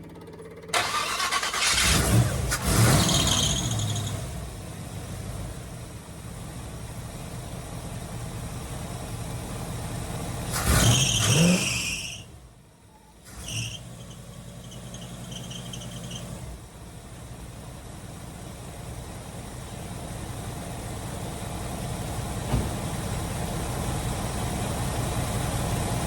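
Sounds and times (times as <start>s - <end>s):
engine knock: 0.0s - 0.8s
car engine starting and idling: 0.0s - 26.0s.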